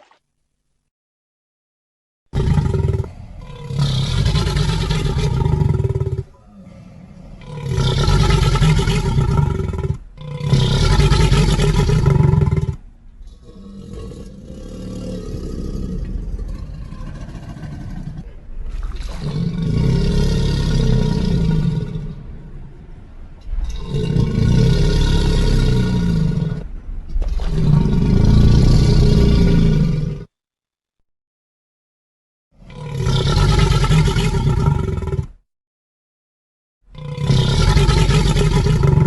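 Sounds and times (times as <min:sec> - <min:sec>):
creature growling: 0:02.4 - 0:12.7
deep creature roars: 0:02.4 - 0:22.5, 0:23.4 - 0:30.3, 0:32.6 - 0:35.4, 0:36.9 - 0:39.0.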